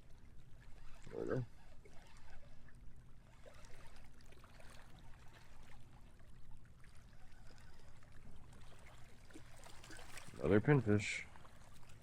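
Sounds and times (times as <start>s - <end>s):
small splashes: 0.6s - 12.0s.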